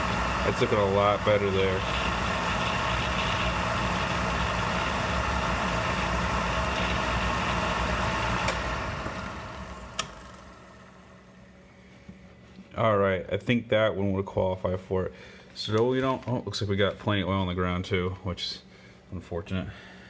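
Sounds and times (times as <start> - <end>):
oil burner motor and pump running: 0.0 - 12.8
sharp click: 9.9 - 10.2.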